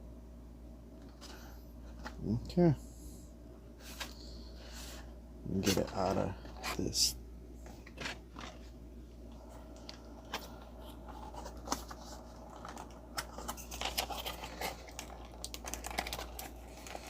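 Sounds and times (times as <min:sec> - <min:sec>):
toy packaging handled: 0:09.7 - 0:17.0.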